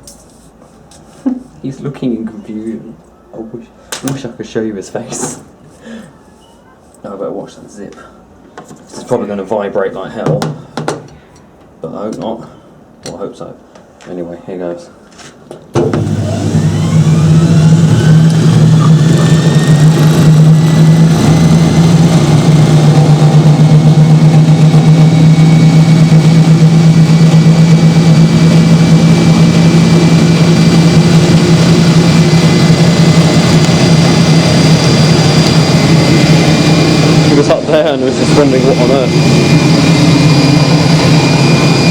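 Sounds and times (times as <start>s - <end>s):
spin dryer whine and hum: 15.8s - 41.9s.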